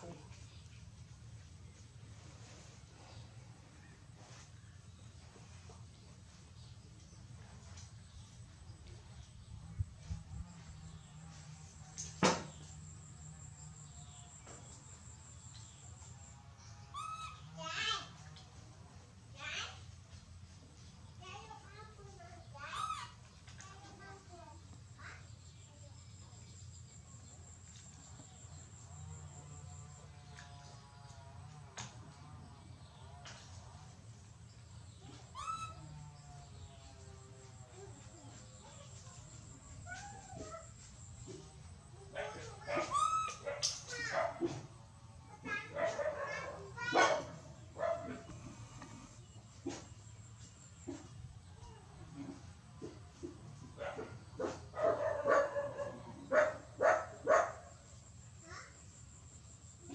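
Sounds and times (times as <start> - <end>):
faint low hum: 0.0 - 59.9
young animal squealing: 35.3 - 36.0.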